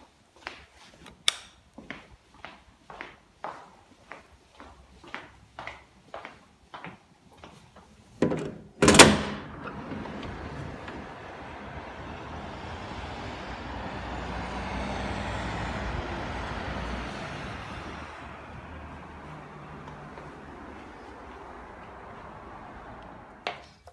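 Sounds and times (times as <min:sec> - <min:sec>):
rushing noise with low hum: 0:09.6 - 0:23.5.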